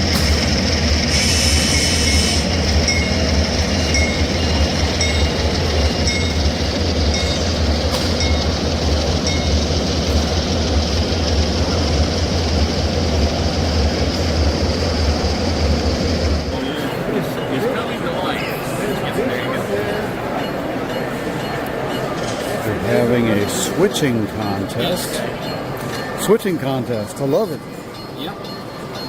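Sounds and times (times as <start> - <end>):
model train rumble: 0.0 - 29.0
bell-like ringing: 1.8 - 10.2, 19.2 - 29.0.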